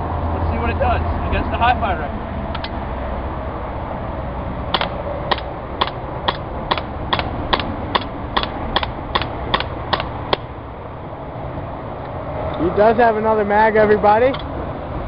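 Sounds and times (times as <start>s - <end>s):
airsoft pistol shots: 4.7s - 10.5s.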